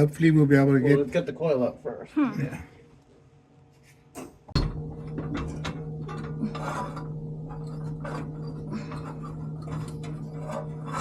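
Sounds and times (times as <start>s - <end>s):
steady machine hum: 4.6s - 11.0s
metal parts scraping and knocking: 5.1s - 11.0s.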